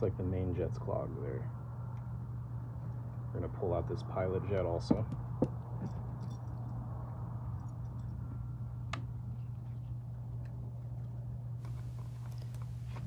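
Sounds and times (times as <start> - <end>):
steady low hum: 11.6 - 13.0.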